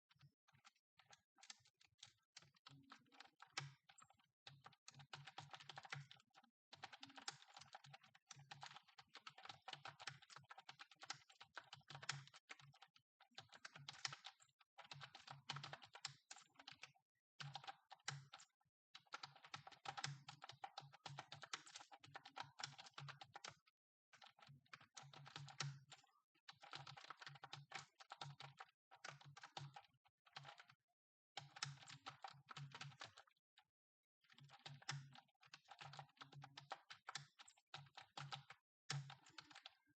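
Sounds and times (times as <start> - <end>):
quiet keyboard typing: 0.1 - 39.9.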